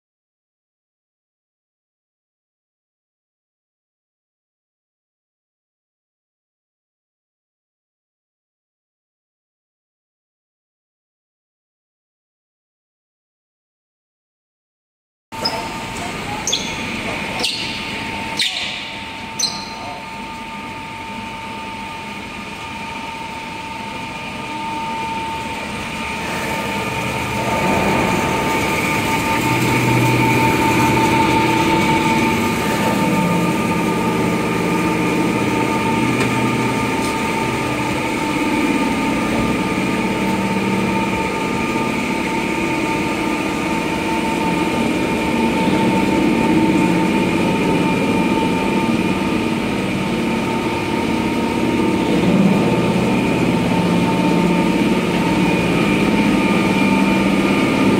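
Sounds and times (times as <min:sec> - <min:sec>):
deep heavy machine noise: 0:15.4 - 0:57.9
machinery high whine: 0:15.4 - 0:57.9.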